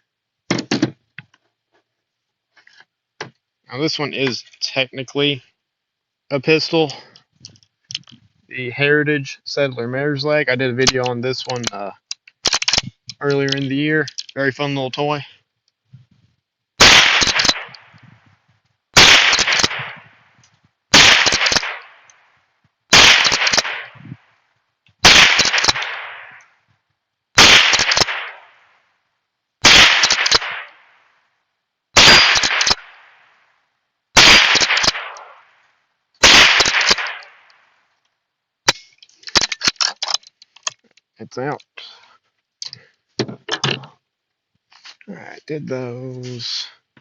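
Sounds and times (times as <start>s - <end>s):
gunshots with echo: 16.8s - 18.0s, 19.0s - 20.1s, 20.9s - 22.0s, 22.9s - 24.2s, 25.0s - 26.4s, 27.4s - 28.6s, 29.6s - 30.8s, 32.0s - 33.1s, 34.2s - 35.5s, 36.2s - 37.4s.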